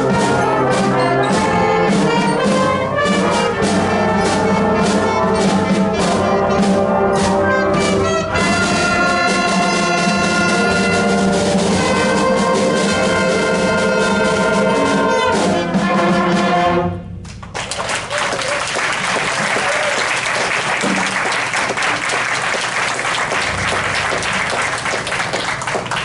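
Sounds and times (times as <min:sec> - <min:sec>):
concert band playing chords: 0:00.0 - 0:17.0.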